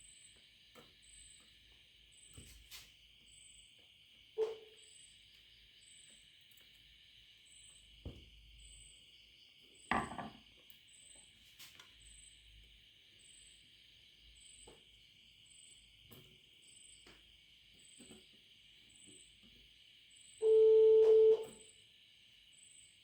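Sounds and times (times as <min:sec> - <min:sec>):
tools set down on work surface: 0:09.9 - 0:10.4.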